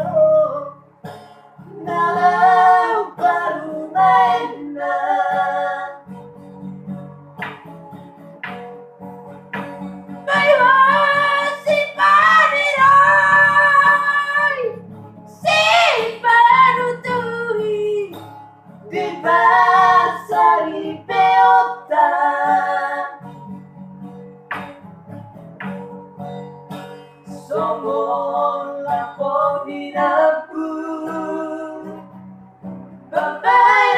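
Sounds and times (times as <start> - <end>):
strummed acoustic guitar: 0.0 - 33.9
person singing in a high voice: 10.3 - 14.8, 15.4 - 18.2.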